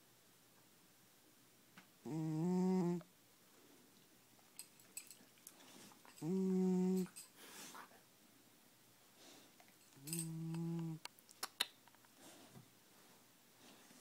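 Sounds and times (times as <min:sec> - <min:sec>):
cat snoring: 0:02.0 - 0:03.0.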